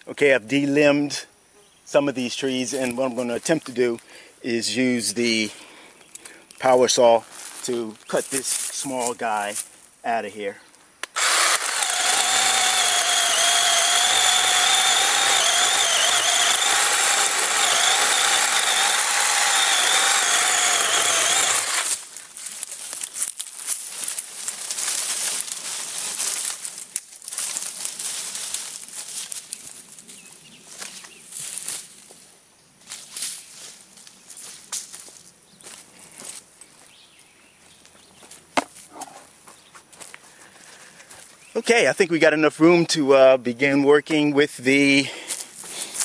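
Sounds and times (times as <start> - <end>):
branches crackling and rustling: 5.6 - 41.5
power saw cutting: 11.0 - 22.0.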